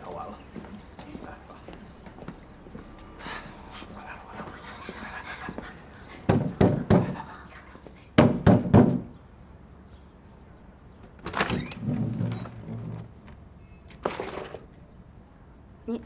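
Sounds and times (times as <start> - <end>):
sharp knocks: 8.2 - 9.1.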